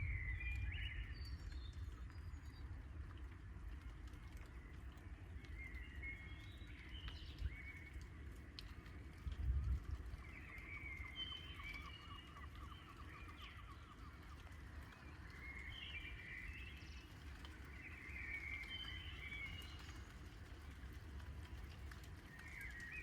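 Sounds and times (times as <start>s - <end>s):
steady low rumble: 0.0s - 4.1s
birds chirping: 9.8s - 20.6s.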